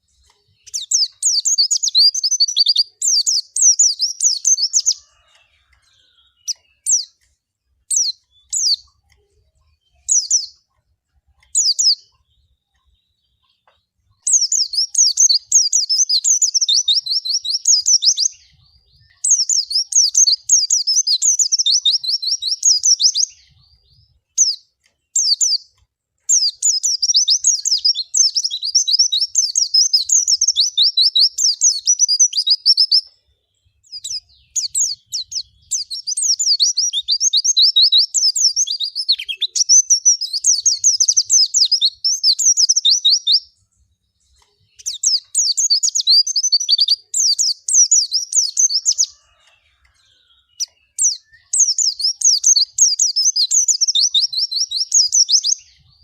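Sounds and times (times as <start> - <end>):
bird twittering song: 0.0 - 56.0.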